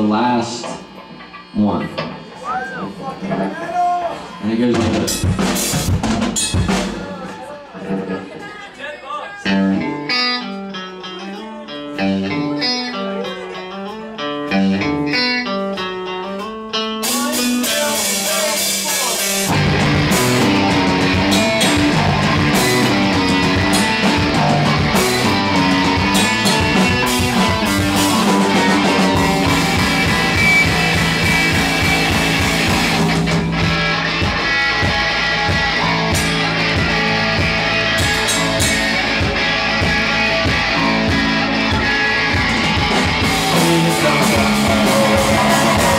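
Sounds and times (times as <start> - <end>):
electric guitar riff: 0.0 - 7.1, 9.4 - 45.9
live rock band playing: 0.0 - 8.6, 9.4 - 45.9
drums: 0.0 - 45.9.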